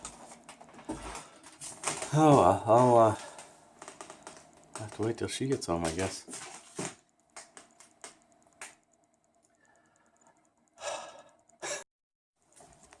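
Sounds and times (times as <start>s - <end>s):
faint clicks: 7.1s - 11.6s.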